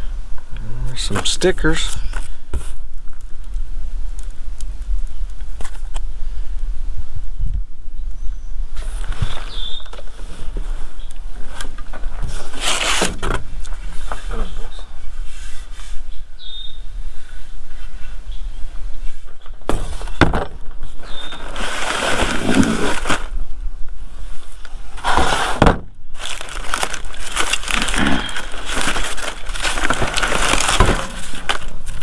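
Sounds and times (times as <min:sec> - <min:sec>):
packing material rustling: 0:19.7 - 0:23.5, 0:25.0 - 0:32.0.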